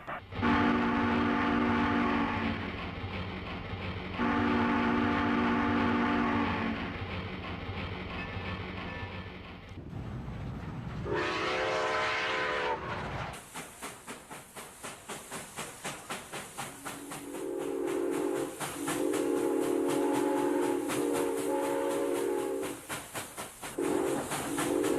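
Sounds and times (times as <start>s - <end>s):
running train beat: 0.0s - 9.8s, 11.0s - 24.9s
train whistle: 0.4s - 2.6s, 4.2s - 6.9s, 11.1s - 13.0s, 17.0s - 22.8s, 23.8s - 24.9s.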